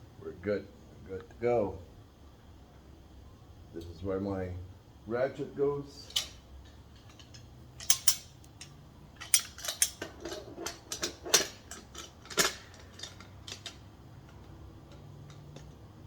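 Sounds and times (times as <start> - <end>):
metal tools clinking on steel frame: 6.0 - 15.8
ratchet clicking: 7.0 - 15.7.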